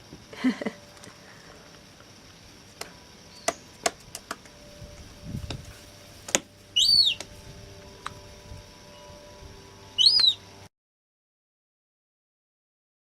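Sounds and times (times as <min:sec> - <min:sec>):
seagull chick peeping: 0:06.8 - 0:07.3, 0:10.0 - 0:10.4.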